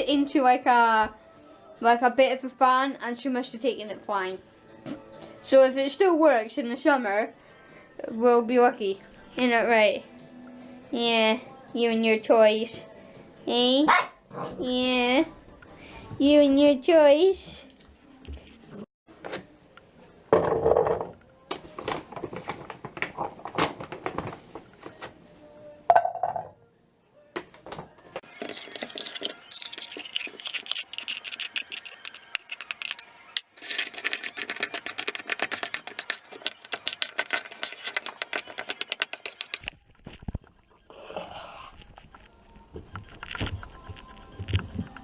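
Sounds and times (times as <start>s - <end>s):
small hard objects rattling: 28.5s - 33.0s, 33.6s - 39.6s.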